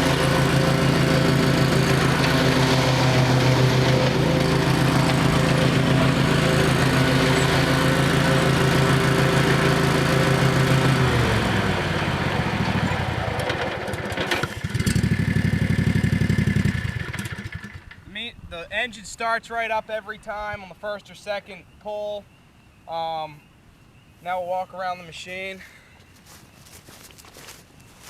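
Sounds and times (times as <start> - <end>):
lawn mower engine running: 0.0 - 18.2.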